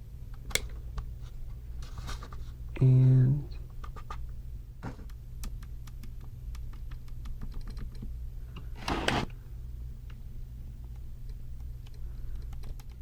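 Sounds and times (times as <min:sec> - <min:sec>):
low steady hum: 0:00.0 - 0:07.4.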